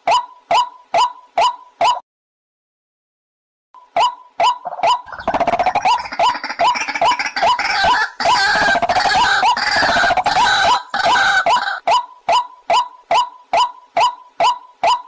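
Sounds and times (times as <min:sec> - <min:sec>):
harsh croaking chorus: 0:04.6 - 0:11.8.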